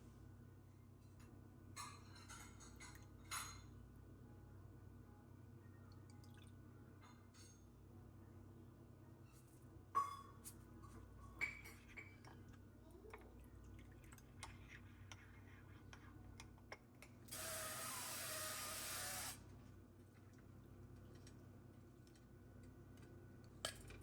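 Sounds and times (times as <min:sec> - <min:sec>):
water running from a tap: 0:17.3 - 0:19.4.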